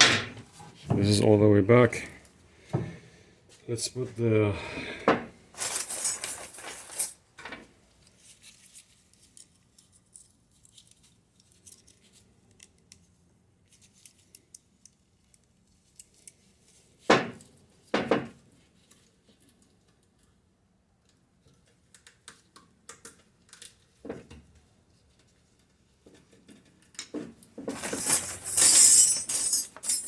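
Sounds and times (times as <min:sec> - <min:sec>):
metal parts clinking: 0:05.6 - 0:07.2, 0:27.7 - 0:30.0.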